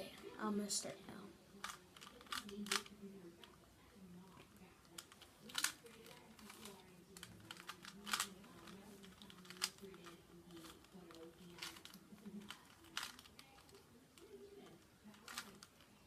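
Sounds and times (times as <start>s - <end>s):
puzzle cube clicking as twisted: 1.6s - 2.9s, 5.0s - 10.0s, 11.5s - 13.4s.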